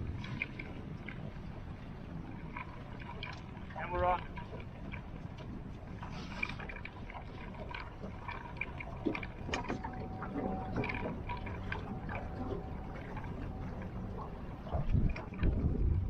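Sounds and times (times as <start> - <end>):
water lapping against boat hull: 0.0 - 16.0
thin steady whine: 8.2 - 15.8.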